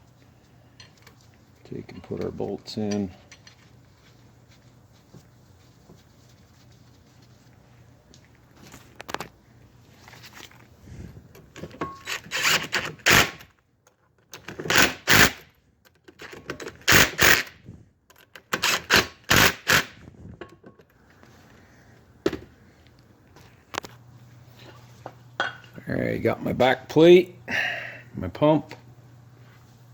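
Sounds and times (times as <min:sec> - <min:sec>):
tool clicking on bolts: 0:11.6 - 0:13.4, 0:16.1 - 0:17.5, 0:18.1 - 0:20.0.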